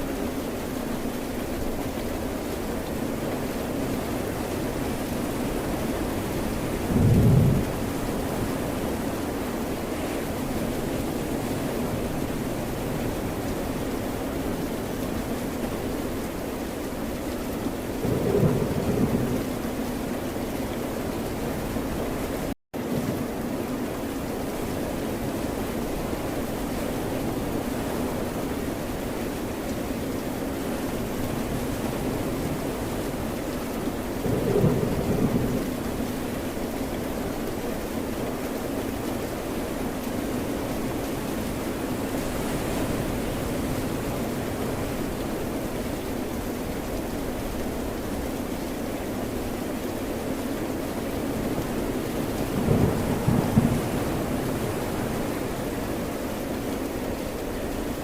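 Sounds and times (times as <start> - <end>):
rain: 0.0 - 58.0
ocean surf: 40.2 - 48.8, 50.8 - 56.8
ocean surf hiss: 41.4 - 46.2.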